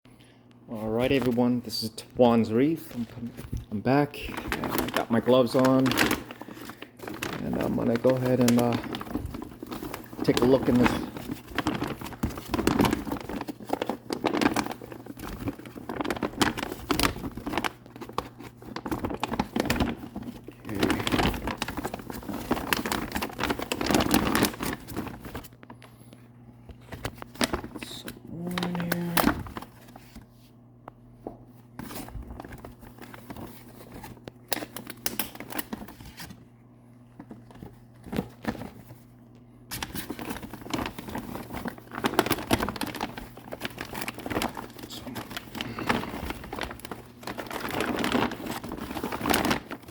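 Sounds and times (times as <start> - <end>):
packing material crinkling: 0.8 - 26.1, 26.7 - 30.5, 31.3 - 36.4, 37.0 - 49.9.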